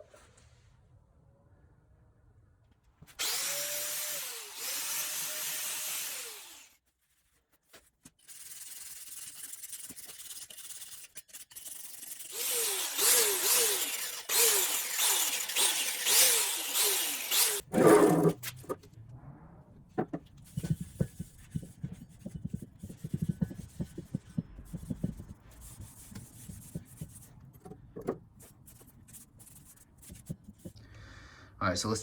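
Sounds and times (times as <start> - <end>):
power tool scrubbing rust off metal: 3.2 - 6.7, 11.9 - 18.5.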